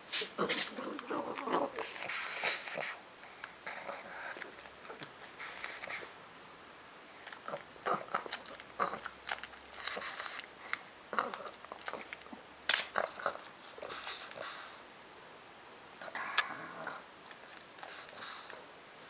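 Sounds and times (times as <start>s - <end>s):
dog chewing and smacking: 1.0s - 6.2s, 7.1s - 14.6s, 17.2s - 18.7s.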